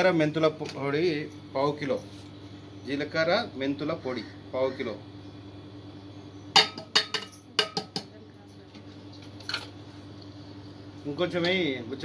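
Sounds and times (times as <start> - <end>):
metal pots and utensils clattering: 6.6 - 8.1.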